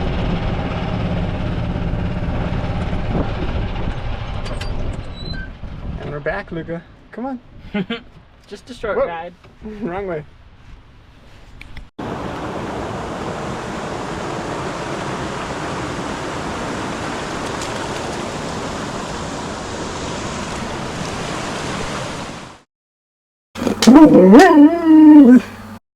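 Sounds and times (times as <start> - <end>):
rushing water: 12.0 - 22.6.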